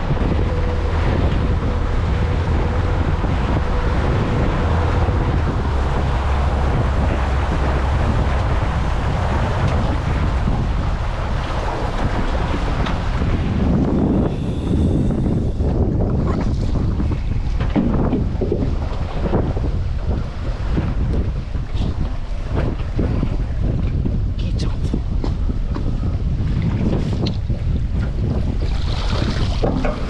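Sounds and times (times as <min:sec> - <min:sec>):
boat engine rumble: 0:00.0 - 0:30.0
wind buffeting microphone: 0:00.0 - 0:30.0.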